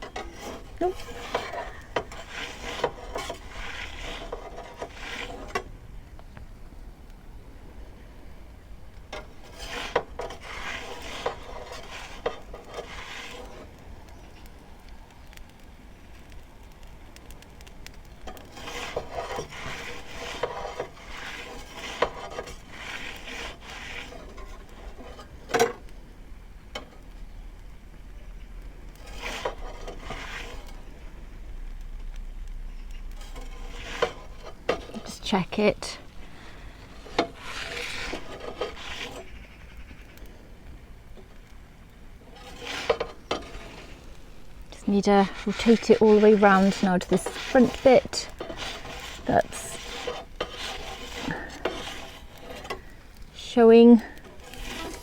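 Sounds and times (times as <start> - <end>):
pizza peel scraping on stone: 0.0 - 6.2, 8.9 - 14.6, 15.2 - 27.4, 28.4 - 31.1, 32.8 - 55.0.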